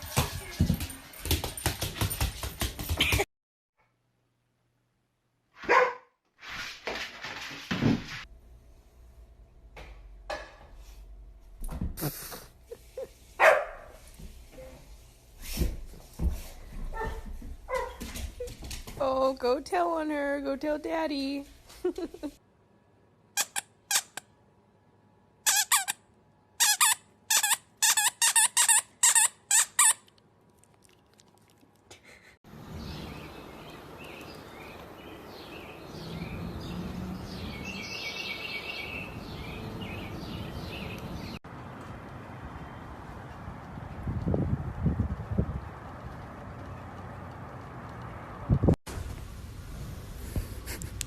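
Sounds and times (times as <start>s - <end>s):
dog barking: 5.6s - 6.2s, 13.4s - 14.0s.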